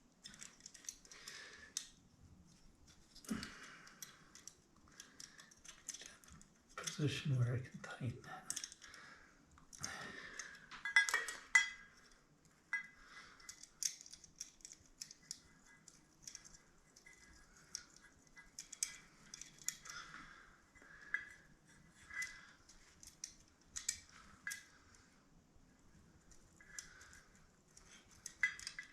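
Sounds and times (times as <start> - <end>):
metallic tool clicks and scrapes: 8.4 - 8.9, 12.7 - 20.2, 26.3 - 28.9.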